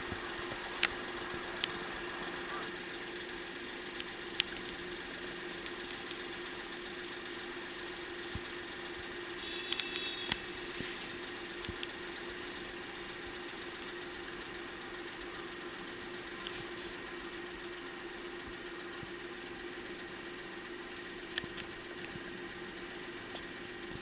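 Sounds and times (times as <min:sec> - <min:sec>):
faint clicks: 0:00.0 - 0:02.8, 0:03.9 - 0:04.9, 0:05.6 - 0:06.3, 0:09.6 - 0:12.0, 0:16.4 - 0:16.9, 0:21.2 - 0:22.3
engine idling: 0:00.0 - 0:24.0.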